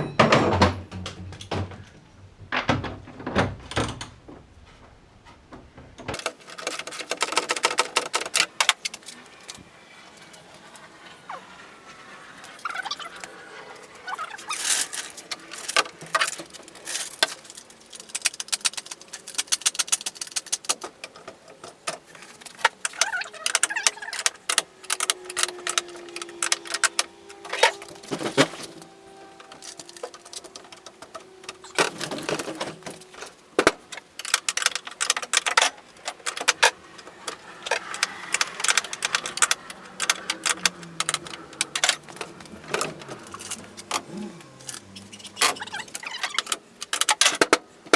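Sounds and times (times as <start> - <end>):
hand tools clinking on metal: 12.4 - 47.6.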